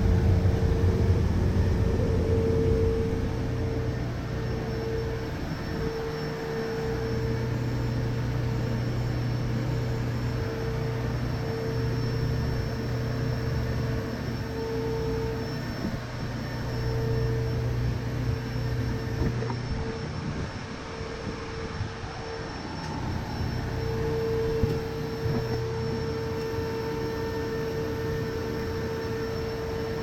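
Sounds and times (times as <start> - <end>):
machine hum with whine: 0.0 - 30.0.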